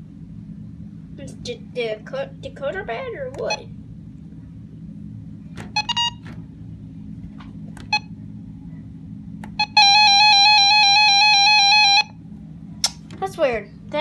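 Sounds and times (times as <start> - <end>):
low hum: 0.0 - 14.0
loud electronic alert tone: 5.6 - 6.3
short beeps: 5.7 - 6.2.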